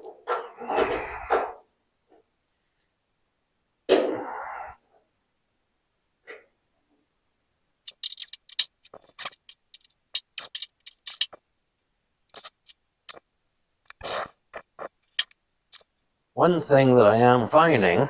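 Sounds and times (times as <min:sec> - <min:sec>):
metal rod scraping on aluminum: 0:07.9 - 0:11.4, 0:14.6 - 0:15.9.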